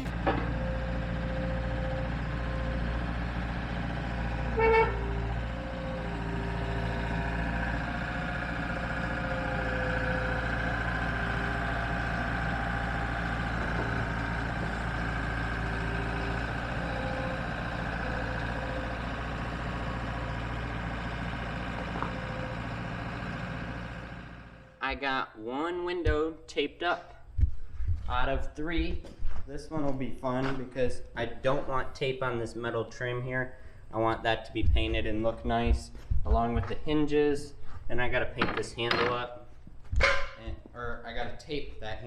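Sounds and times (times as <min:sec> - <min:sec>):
skid loader engine running: 0:00.0 - 0:24.8
short horn beep: 0:04.5 - 0:05.2.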